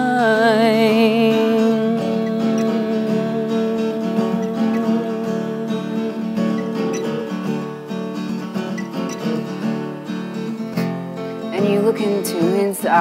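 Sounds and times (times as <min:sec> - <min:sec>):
acoustic guitar strumming chords: 0:00.0 - 0:13.0.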